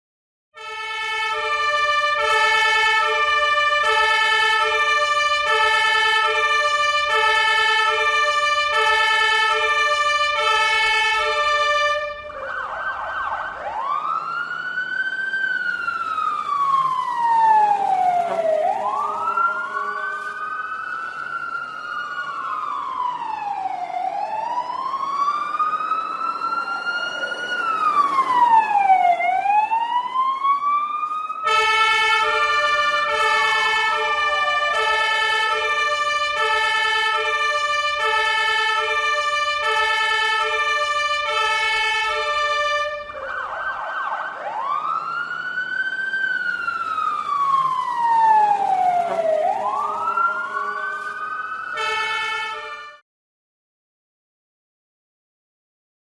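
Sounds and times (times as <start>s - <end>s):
fire truck siren: 0.6s - 53.0s.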